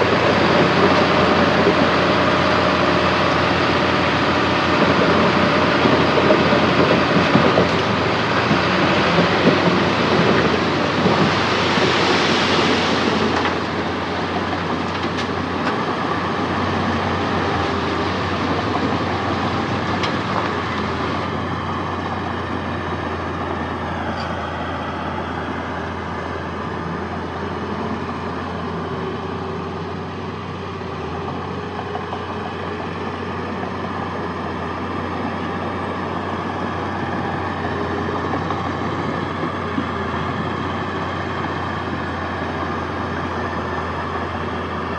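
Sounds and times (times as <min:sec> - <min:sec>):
loud rushing noise: 0:00.0 - 0:30.9
heavy diesel machinery running: 0:00.0 - 0:44.9.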